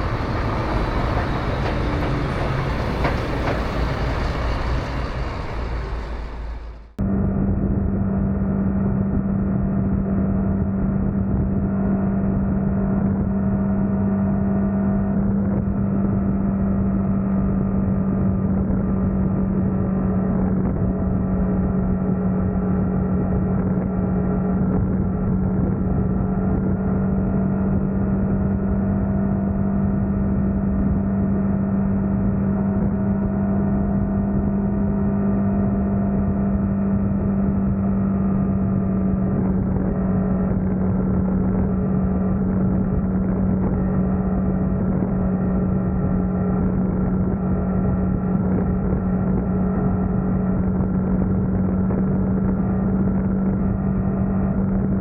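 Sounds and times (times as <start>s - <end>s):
motorcycle engine drone: 0.0s - 55.0s
road noise rush: 0.0s - 55.0s.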